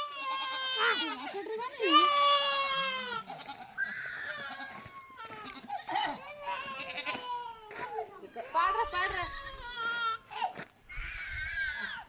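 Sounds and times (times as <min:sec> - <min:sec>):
animal bleating: 0:00.0 - 0:07.5.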